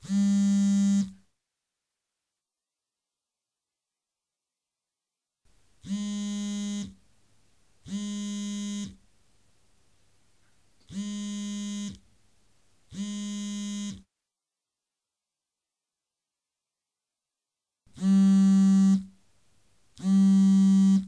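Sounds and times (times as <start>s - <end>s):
harsh electronic buzzer: 0.0s - 1.1s, 5.9s - 7.0s, 7.9s - 9.0s, 10.9s - 12.0s, 12.9s - 14.1s, 18.0s - 19.1s, 20.0s - 21.0s.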